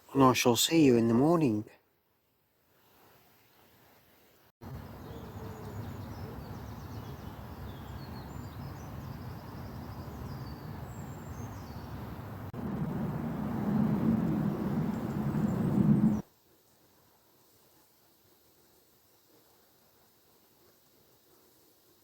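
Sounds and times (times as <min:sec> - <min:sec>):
small birds chirping: 0:04.6 - 0:16.2
steady low rushing background: 0:09.0 - 0:16.2.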